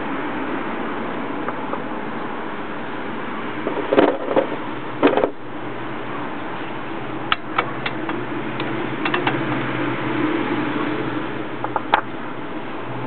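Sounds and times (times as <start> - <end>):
steady background hum: 0.0 - 13.0
hand tools clicking and knocking: 7.3 - 9.4.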